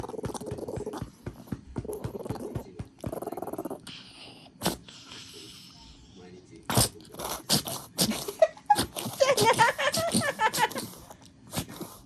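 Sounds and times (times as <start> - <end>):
dog breathing rapidly: 0.0 - 6.3, 10.0 - 12.0
dog sneezing: 4.6 - 4.9, 6.7 - 12.0.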